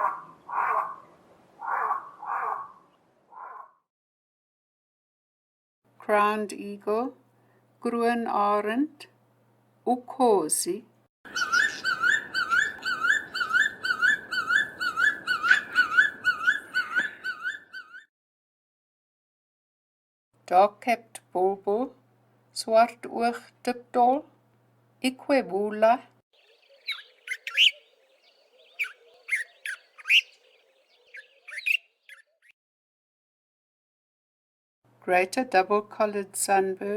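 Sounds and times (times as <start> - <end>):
eagle calling with whistled notes: 11.3 - 18.1, 26.4 - 32.5.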